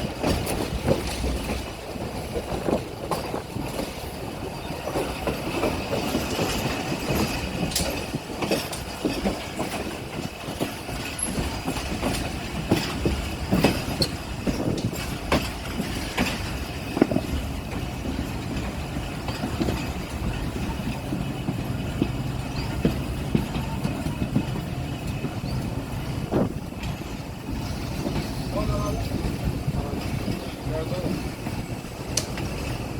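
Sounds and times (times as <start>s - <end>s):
train wheels rumbling on rail: 0.0s - 32.9s
track clicks and knocks: 29.2s - 32.8s.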